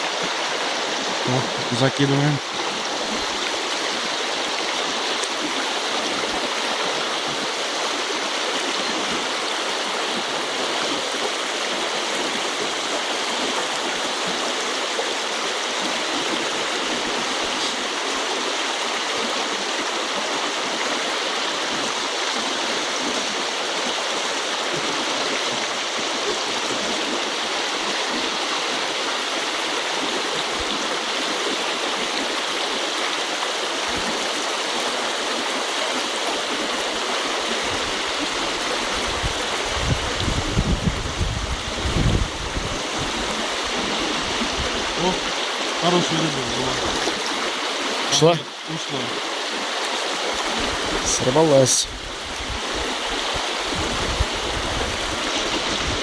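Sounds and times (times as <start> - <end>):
river water rushing: 0.0 - 56.0.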